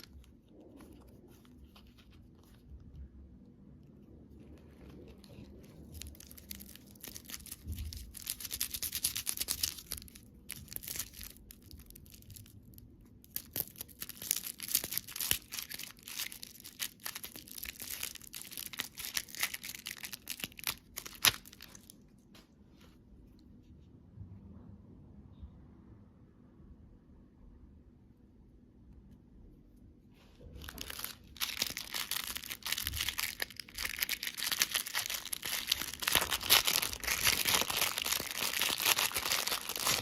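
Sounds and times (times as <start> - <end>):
plastic wrapper crinkling and tearing: 0.0 - 2.8, 4.6 - 22.2, 30.5 - 40.0.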